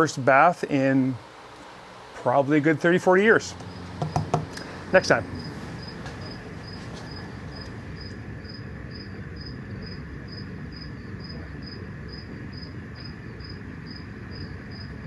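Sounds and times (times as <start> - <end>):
low background hum: 0.0 - 15.0
cricket chirping: 3.6 - 15.0.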